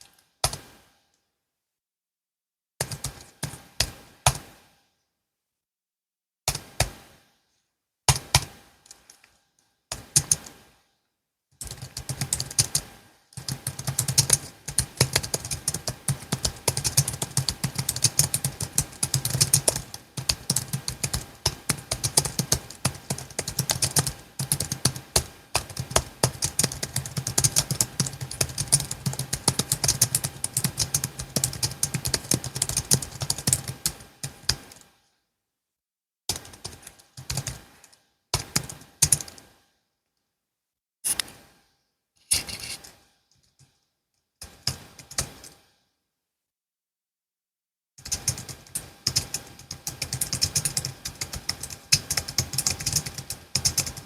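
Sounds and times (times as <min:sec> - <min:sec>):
typing on keyboard: 0:02.8 - 0:04.4, 0:06.5 - 0:07.0, 0:09.9 - 0:10.5, 0:11.6 - 0:34.9, 0:36.3 - 0:37.7, 0:38.4 - 0:39.4, 0:44.4 - 0:45.6, 0:48.0 - 0:54.0.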